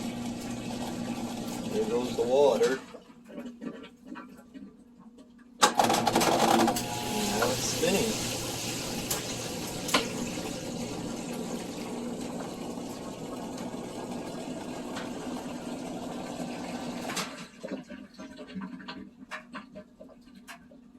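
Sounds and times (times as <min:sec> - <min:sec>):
drain pump humming: 0:00.0 - 0:03.0, 0:05.8 - 0:17.5
water gushing down drain: 0:00.0 - 0:05.0, 0:06.7 - 0:20.9
pump switching off click: 0:06.6 - 0:17.3.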